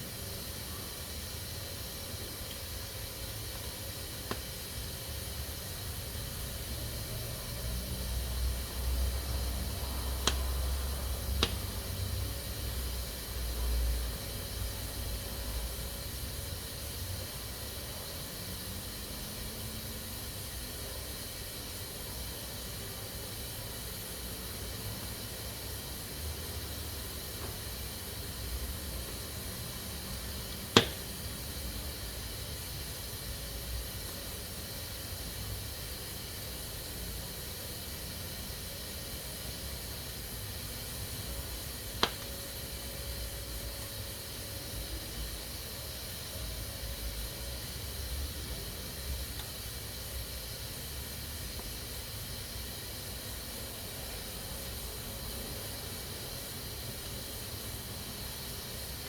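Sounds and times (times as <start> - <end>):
pressure cooker hissing steam: 0.0 - 59.0.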